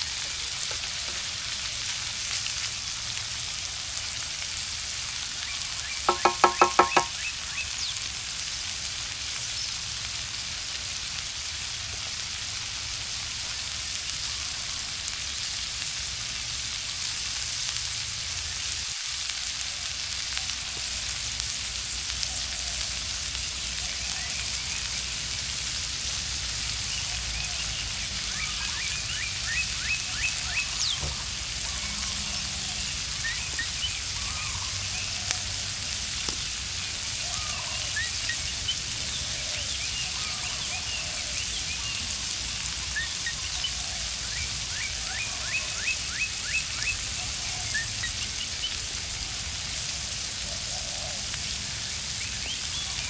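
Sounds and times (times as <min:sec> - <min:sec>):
campfire crackles: 0:00.0 - 0:53.0
food sizzling in a pan: 0:00.0 - 0:53.0.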